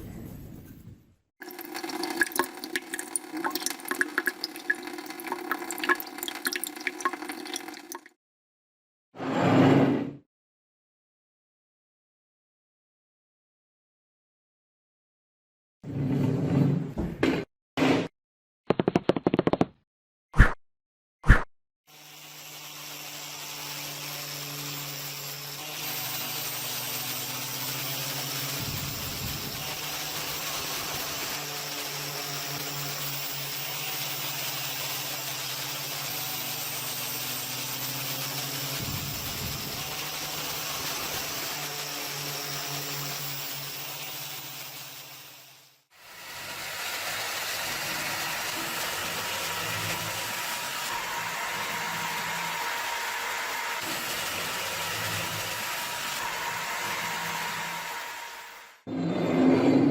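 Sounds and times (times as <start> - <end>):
electric power tool running: 21.9 - 58.9.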